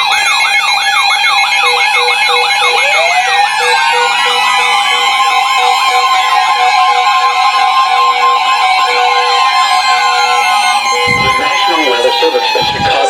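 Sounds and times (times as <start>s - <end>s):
steady beeping: 0.0s - 13.0s
warbling siren tones: 0.0s - 13.0s
upward sweeping tone: 9.6s - 13.0s.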